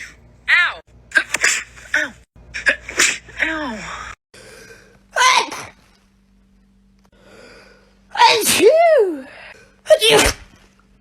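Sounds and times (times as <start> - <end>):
person sneezing: 1.1 - 4.2.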